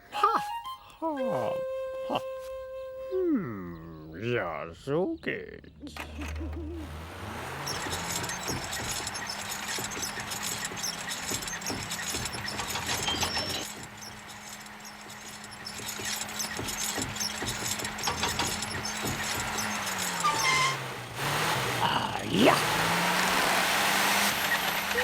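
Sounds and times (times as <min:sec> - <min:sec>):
clicks and rattles: 0:05.8 - 0:21.8
motor running: 0:05.9 - 0:25.0.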